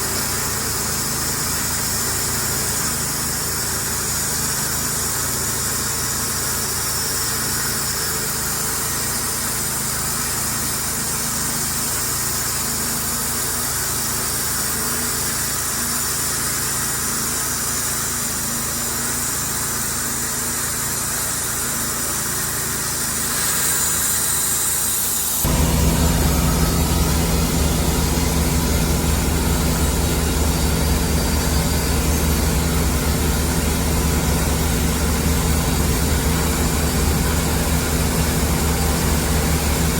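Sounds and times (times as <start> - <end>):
sawmill engine running: 0.0 - 39.9
low hum: 25.4 - 38.6.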